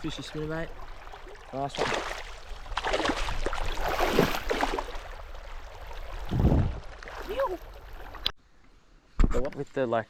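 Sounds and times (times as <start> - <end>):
water splashing and sloshing: 0.0 - 8.4.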